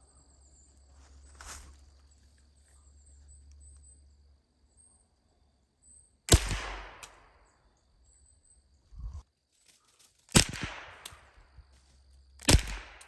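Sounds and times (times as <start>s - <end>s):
insects buzzing and chirping: 0.0s - 13.0s
gunshot with echo: 6.3s - 7.4s, 10.4s - 11.3s, 12.4s - 13.0s.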